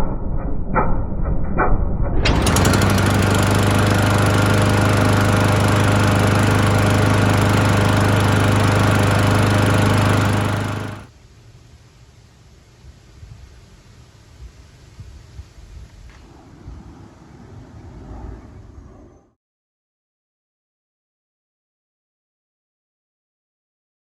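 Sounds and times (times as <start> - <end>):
lawn mower engine running: 2.3 - 11.1.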